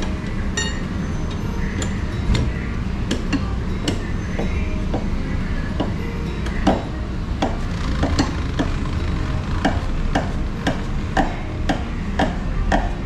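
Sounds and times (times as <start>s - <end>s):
car jack clicking as cranked: 6.6s - 9.0s.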